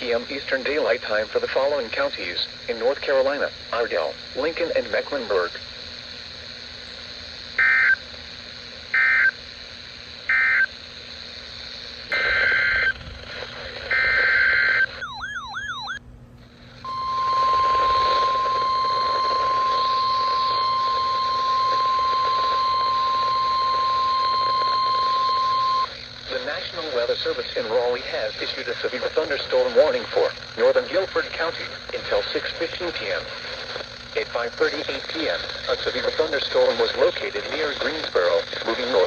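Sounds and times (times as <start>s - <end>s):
buzzy alert data bursts: 2.5s - 16.0s, 16.8s - 36.7s
steady single-pitch alert tone: 13.9s - 16.0s, 16.8s - 25.9s.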